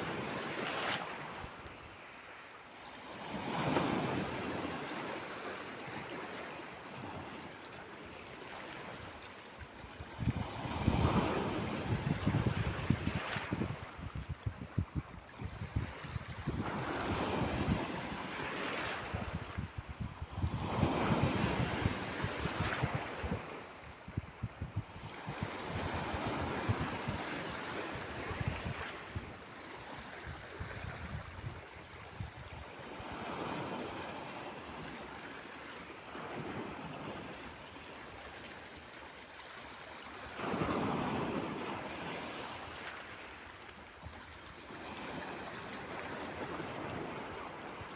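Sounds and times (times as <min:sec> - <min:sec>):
wind rumbling on microphone: 0:10.0 - 0:34.0.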